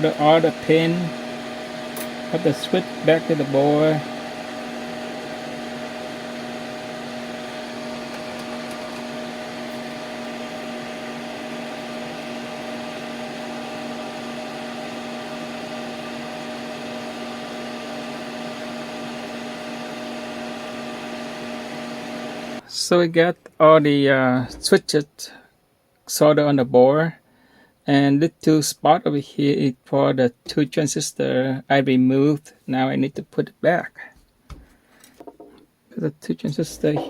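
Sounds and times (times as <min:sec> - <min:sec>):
small electric fan whirring: 0:00.0 - 0:22.6.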